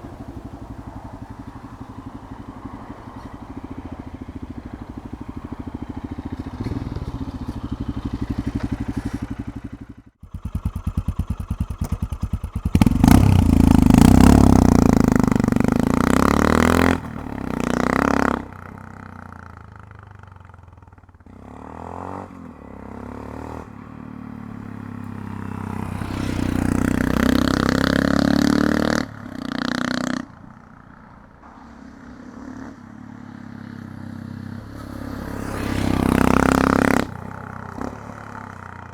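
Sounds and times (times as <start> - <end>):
motorcycle engine thumping: 0.0 - 15.8.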